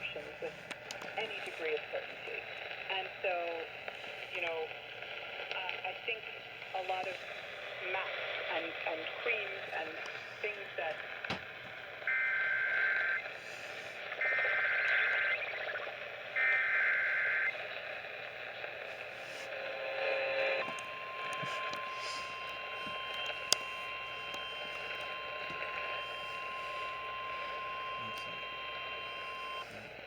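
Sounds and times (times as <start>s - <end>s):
buzzy data tone bursts: 12.0s - 17.6s, 19.0s - 29.9s.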